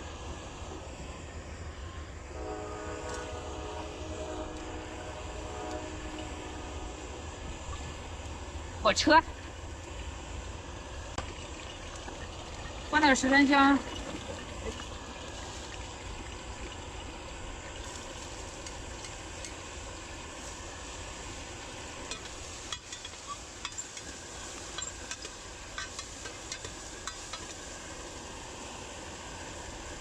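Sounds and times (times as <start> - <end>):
cabbage sizzling in a pan: 17.6 - 30.0.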